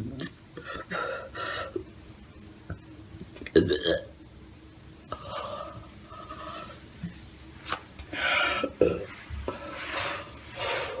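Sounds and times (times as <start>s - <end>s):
breathy hiss: 8.0s - 11.0s.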